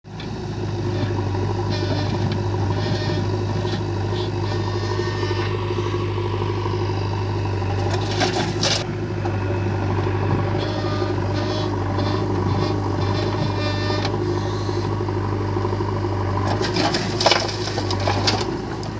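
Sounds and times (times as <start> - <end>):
heavy diesel engine running: 0.0 - 18.9
metal clanking: 7.7 - 8.9, 16.5 - 18.6.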